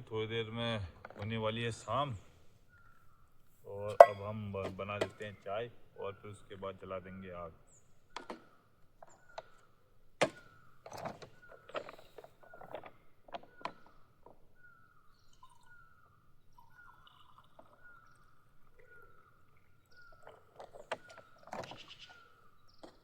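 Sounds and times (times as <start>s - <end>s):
bird calling: 0.0s - 23.0s
clatter of things being handled: 10.2s - 14.0s.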